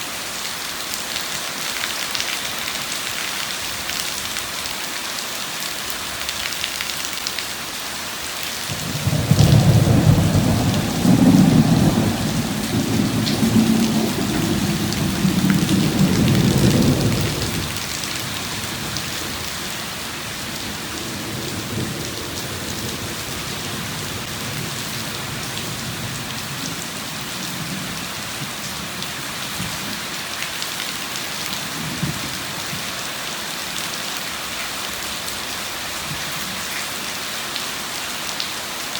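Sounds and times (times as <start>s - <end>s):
heavy rain: 0.0s - 38.9s
thunder rumbling: 8.7s - 28.6s.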